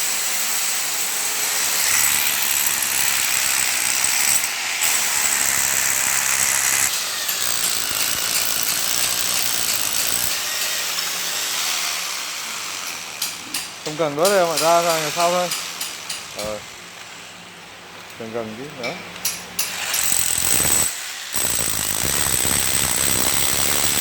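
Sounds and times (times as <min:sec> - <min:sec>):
electric drill motor whining: 0:01.9 - 0:10.4, 0:19.7 - 0:24.0.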